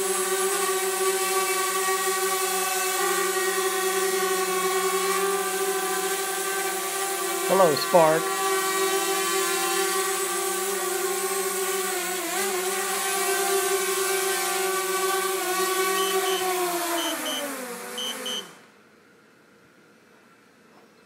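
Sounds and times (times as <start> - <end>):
drone propellers whining: 2.9 - 9.4, 12.8 - 18.6
short high beeps: 16.0 - 16.4, 17.0 - 18.5.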